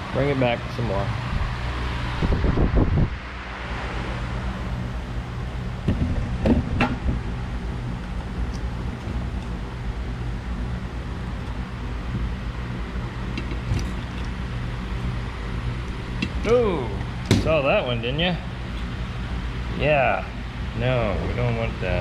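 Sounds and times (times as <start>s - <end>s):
steady low hum: 0.0s - 22.0s
metal shrinker clunks and creaks: 13.2s - 15.0s, 15.8s - 17.8s.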